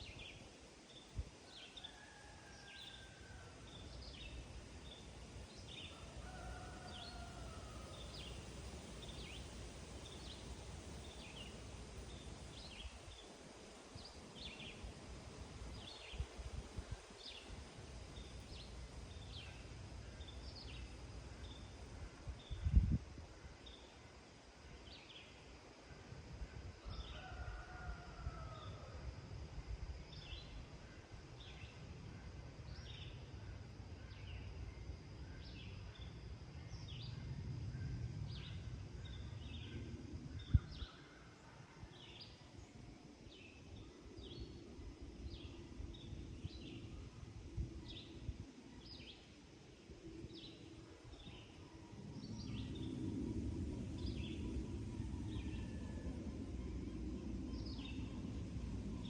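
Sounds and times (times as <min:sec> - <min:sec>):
low wind rumble: 0:00.0 - 0:59.0.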